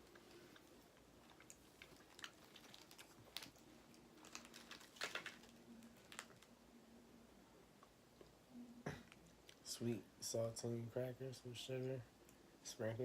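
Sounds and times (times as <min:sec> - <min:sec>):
cracker crackling as handled: 0:00.0 - 0:06.6.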